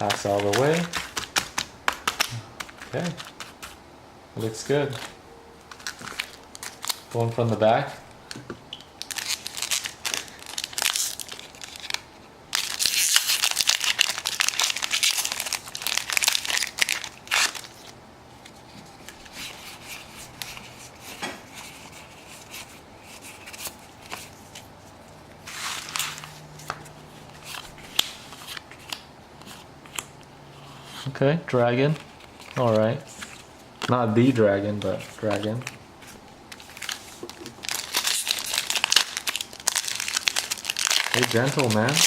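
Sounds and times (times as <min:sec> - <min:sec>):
foil wrapper crinkling: 0:00.0 - 0:03.8, 0:04.4 - 0:07.6, 0:09.0 - 0:18.0, 0:25.4 - 0:29.1, 0:31.9 - 0:42.0.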